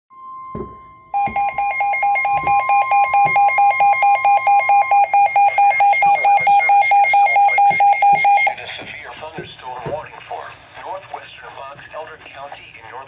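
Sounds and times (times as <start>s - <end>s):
steady warning alarm tone: 0.1s - 10.6s
pulsing alert beeps: 1.2s - 8.6s.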